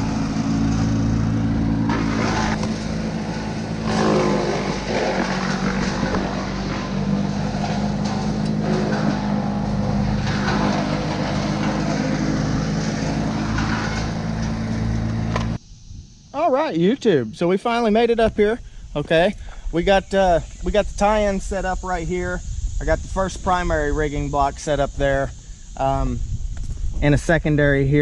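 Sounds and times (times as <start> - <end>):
engine running steadily: 0.0 - 15.6.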